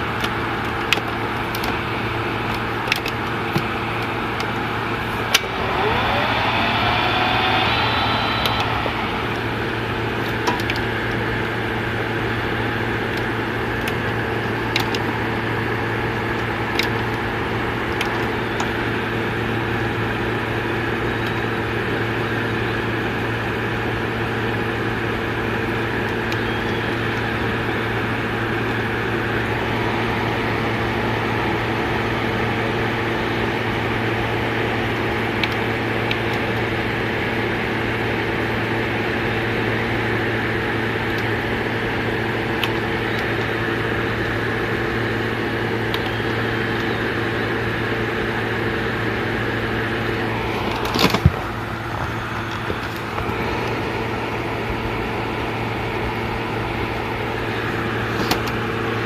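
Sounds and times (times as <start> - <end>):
tape mechanism motor hum: 5.0 - 11.2.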